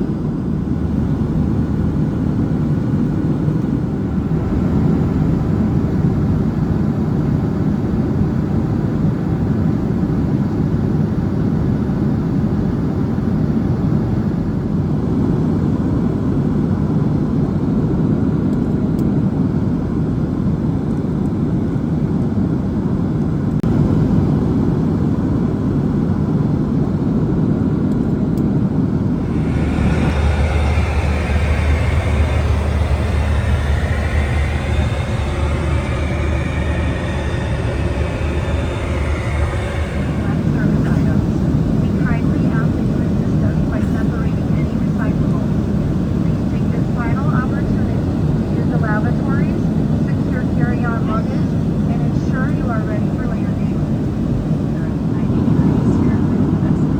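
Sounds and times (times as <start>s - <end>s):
deep low hum: 0.0s - 8.7s, 29.0s - 48.1s
airliner cabin noise: 29.0s - 45.7s.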